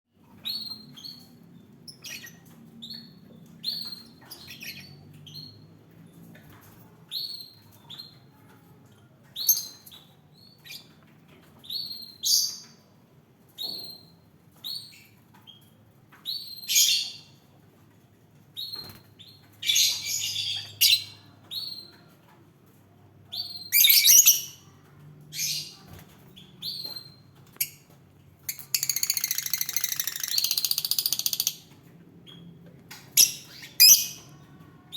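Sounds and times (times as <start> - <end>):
lovebirds chirping: 32.3 - 34.9.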